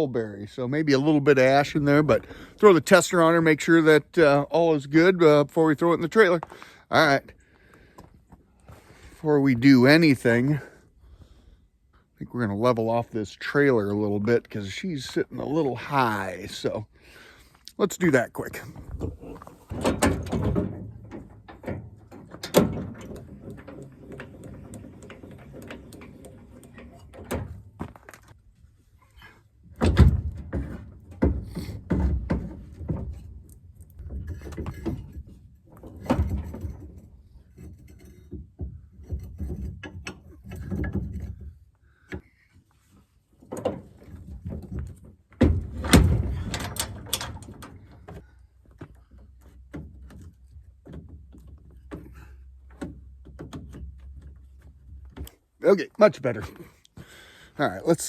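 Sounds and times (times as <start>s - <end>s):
thunks and knocks on trailer: 18.7s - 28.1s, 29.6s - 33.4s, 34.0s - 37.3s, 43.4s - 55.3s.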